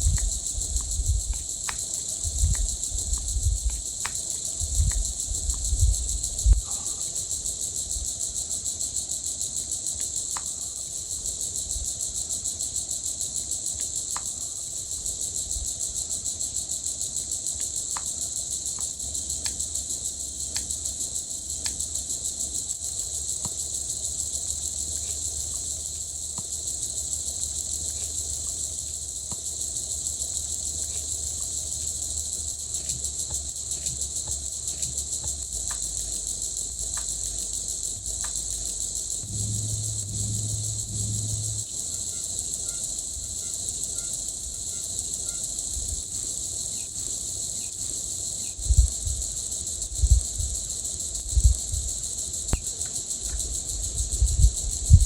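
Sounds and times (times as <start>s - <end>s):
faint ticks: 0.0s - 6.8s, 9.9s - 10.6s, 20.5s - 20.8s, 21.6s - 21.9s, 32.5s - 37.5s, 38.2s - 41.6s
crickets chirping: 0.0s - 55.0s
low dull thumps: 39.2s - 41.7s.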